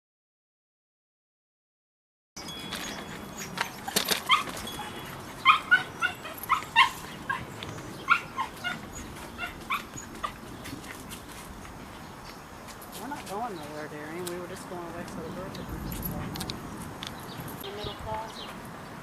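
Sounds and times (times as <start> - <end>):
small dog yipping and barking: 3.4 - 11.0.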